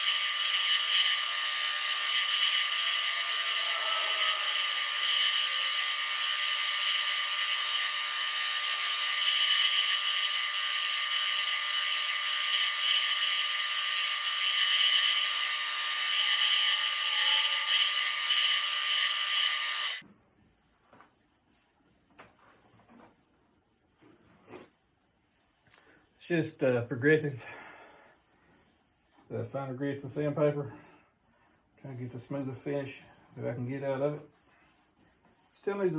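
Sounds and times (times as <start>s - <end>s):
wood lathe whining: 0.0s - 20.0s.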